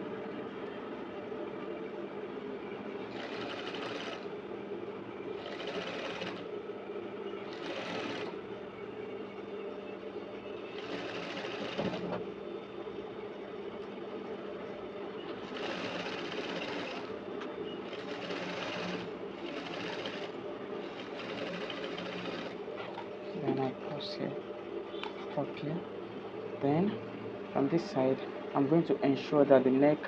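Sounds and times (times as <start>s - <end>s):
sewing machine stitching: 5.4s - 6.4s, 15.4s - 17.1s, 17.9s - 22.6s.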